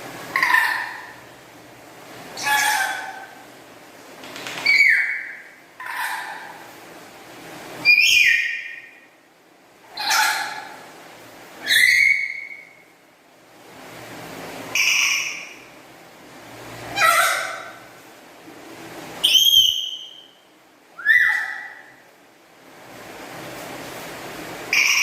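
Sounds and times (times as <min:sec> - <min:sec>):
parrot whistled calls: 0:02.4 - 0:03.2, 0:04.6 - 0:06.4, 0:07.8 - 0:09.0, 0:09.9 - 0:10.7, 0:11.6 - 0:12.8, 0:19.2 - 0:20.4, 0:21.0 - 0:21.9, 0:24.7 - 0:25.0.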